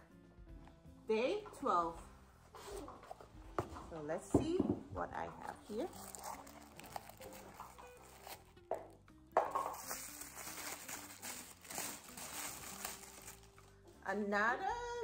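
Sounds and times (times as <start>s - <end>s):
cardboard and paper rustling: 5.4s - 8.6s, 9.4s - 13.7s.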